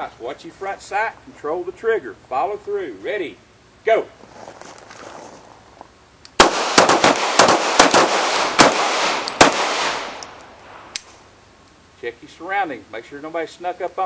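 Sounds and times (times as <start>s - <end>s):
pistol shots: 6.4s - 11.1s.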